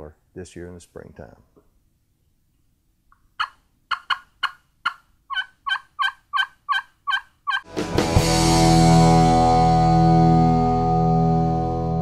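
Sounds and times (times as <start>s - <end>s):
turkey yelping: 3.4s - 7.7s
loud music chord: 7.7s - 12.0s.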